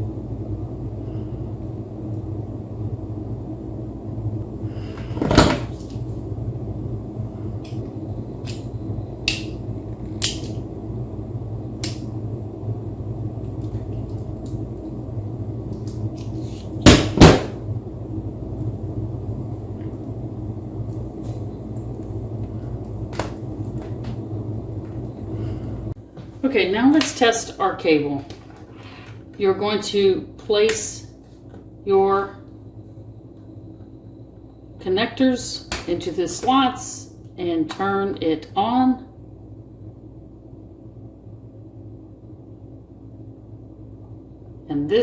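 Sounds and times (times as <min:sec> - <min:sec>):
steady low hum: 0:00.0 - 0:45.0.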